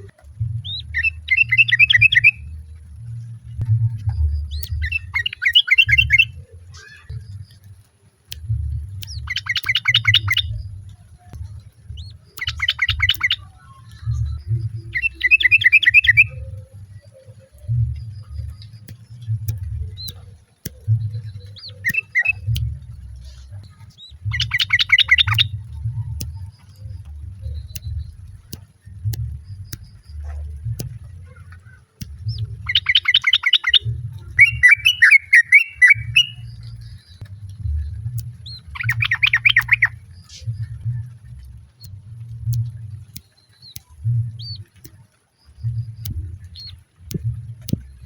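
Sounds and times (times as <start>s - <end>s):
low uneven rumble: 0.0s - 48.0s
bulbuls chattering calls: 31.0s - 36.5s
warbled bird phrase: 34.4s - 36.5s.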